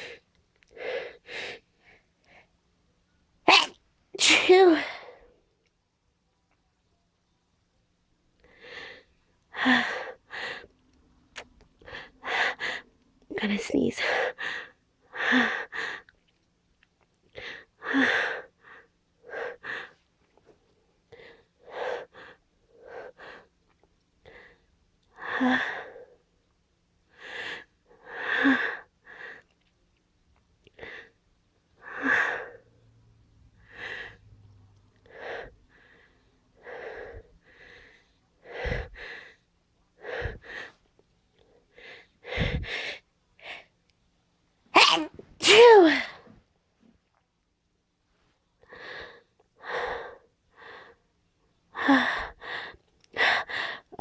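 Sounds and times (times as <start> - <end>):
sharp gasping breaths: 41.7 - 43.7.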